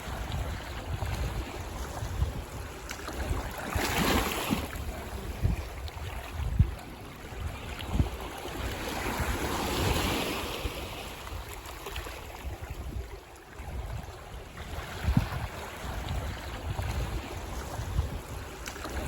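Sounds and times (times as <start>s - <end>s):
ocean waves on a beach: 0.0s - 19.0s
wind buffeting microphone: 0.0s - 19.0s.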